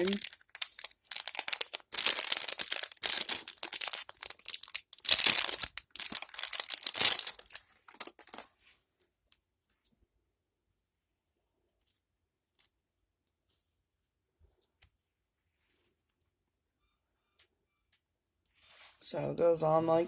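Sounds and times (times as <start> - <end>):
plastic packaging crinkling: 0.0 - 8.5.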